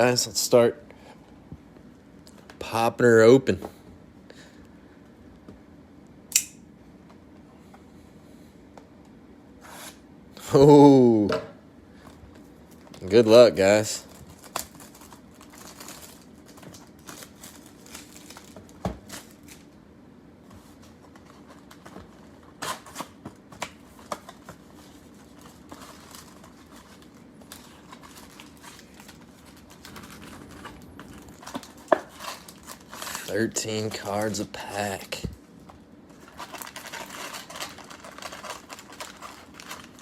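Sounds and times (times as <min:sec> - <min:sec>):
plastic wrapping crinkling and tearing: 0:12.7 - 0:19.8, 0:21.2 - 0:35.2, 0:36.1 - 0:40.0.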